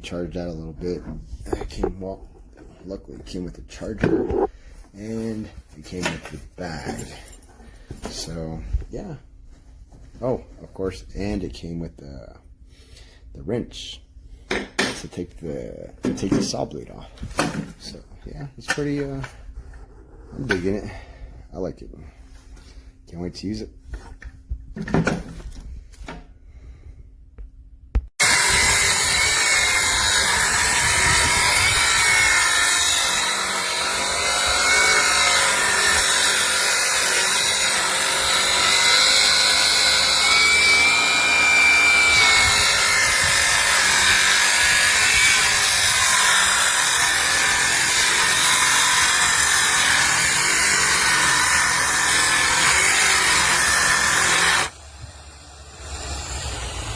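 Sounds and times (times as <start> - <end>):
circular saw cutting wood: 2.6 - 6.1, 28.2 - 56.9.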